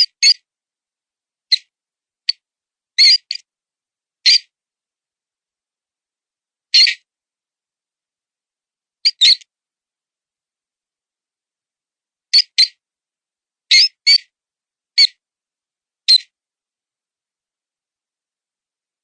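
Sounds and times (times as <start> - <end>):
high-pitched mouse squeaks: 0.0 - 0.4, 3.0 - 3.4, 4.3 - 4.5, 6.8 - 7.0, 9.0 - 9.5, 12.3 - 12.8, 13.7 - 14.3, 16.1 - 16.3.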